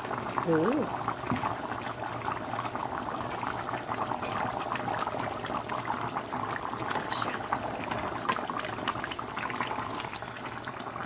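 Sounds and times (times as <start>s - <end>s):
pot bubbling with small pops: 0.0s - 11.0s.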